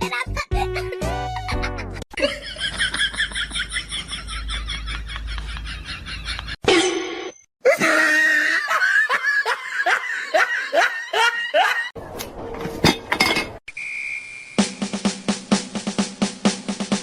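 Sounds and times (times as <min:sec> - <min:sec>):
person laughing: 0:00.0 - 0:06.6, 0:07.6 - 0:11.9.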